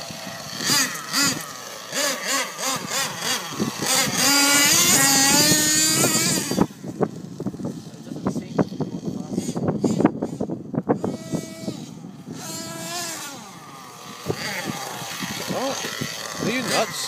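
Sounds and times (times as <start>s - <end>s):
toy truck engine revving: 0.0s - 17.0s.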